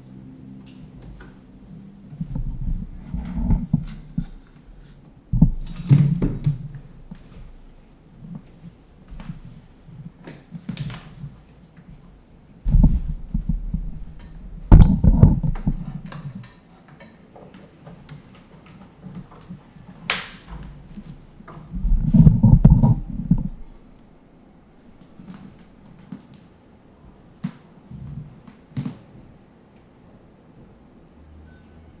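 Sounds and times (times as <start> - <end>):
dull bumps and rustling: 2.1 - 10.2, 11.1 - 16.4, 20.5 - 24.2.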